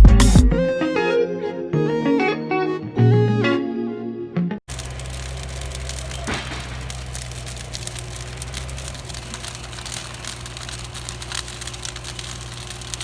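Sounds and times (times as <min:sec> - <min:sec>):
backhoe engine idling: 0:04.7 - 0:13.0
burning wood crackling: 0:04.7 - 0:13.0.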